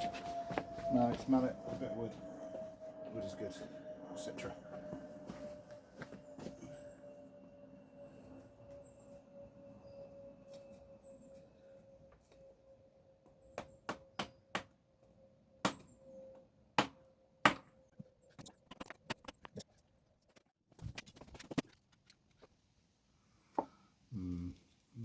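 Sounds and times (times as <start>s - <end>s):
faint ringing tone: 0.0s - 13.6s.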